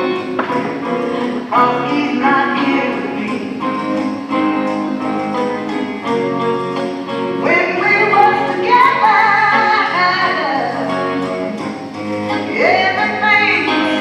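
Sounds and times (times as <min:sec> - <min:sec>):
band song with female vocals: 0:00.0 - 0:04.0, 0:07.4 - 0:14.0.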